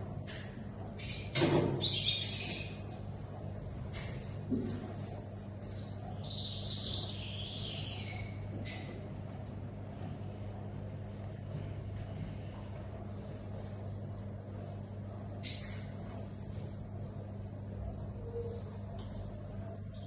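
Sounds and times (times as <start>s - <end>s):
steady low hum: 0.0s - 20.0s
lovebirds chirping: 5.6s - 9.1s.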